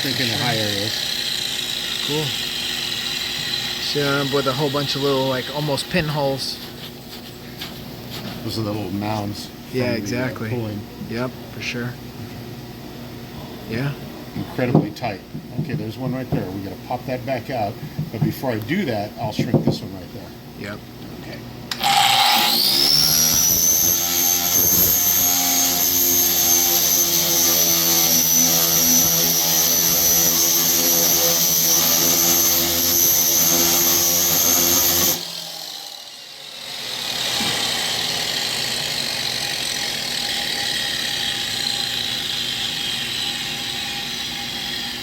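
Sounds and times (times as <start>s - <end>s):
power tool high whine: 0.0s - 6.6s, 21.7s - 45.0s.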